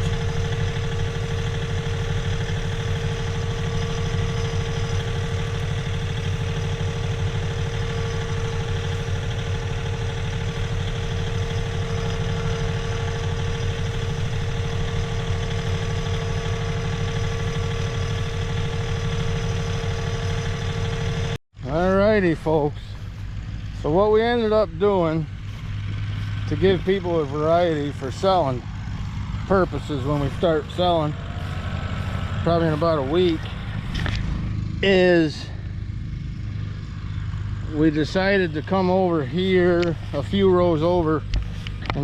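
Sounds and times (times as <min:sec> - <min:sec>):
steady whine: 0:00.0 - 0:42.0
tractor diesel engine running: 0:00.0 - 0:42.0.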